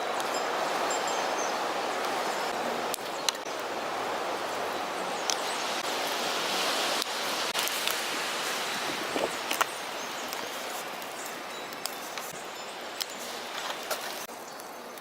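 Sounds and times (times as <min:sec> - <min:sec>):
strong wind through leaves: 0:00.0 - 0:15.0
pruning shears snipping: 0:06.9 - 0:08.2, 0:09.1 - 0:12.4.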